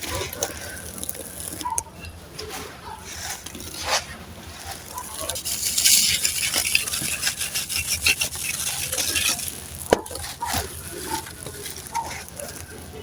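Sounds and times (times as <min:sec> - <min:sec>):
sand cement crunching: 0:02.4 - 0:13.0.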